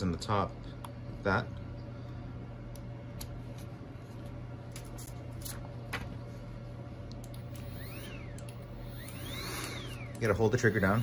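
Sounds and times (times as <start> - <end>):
air duster motor whining: 7.2 - 11.0.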